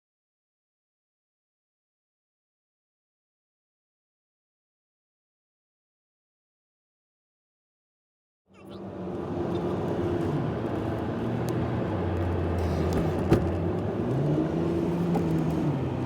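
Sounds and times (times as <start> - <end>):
car engine and road hum: 8.6 - 16.0.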